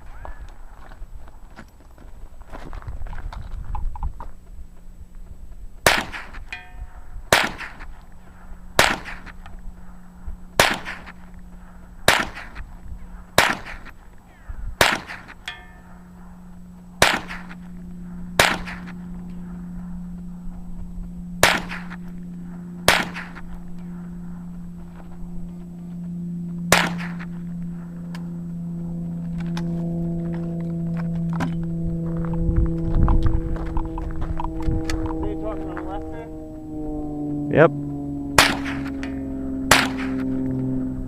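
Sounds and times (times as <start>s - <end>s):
low hum: 0.0s - 41.0s
gunshots: 5.8s - 6.5s, 7.3s - 8.0s, 8.8s - 9.4s, 10.6s - 11.3s, 12.0s - 12.7s, 13.4s - 14.0s, 14.8s - 15.4s, 17.0s - 17.7s, 18.4s - 19.0s, 21.4s - 22.0s, 22.8s - 23.5s, 26.7s - 27.3s, 38.4s - 39.1s, 39.7s - 40.2s.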